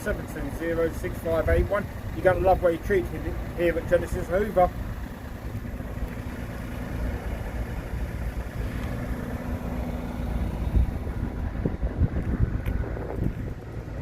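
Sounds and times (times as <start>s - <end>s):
wind buffeting microphone: 8.0s - 14.0s.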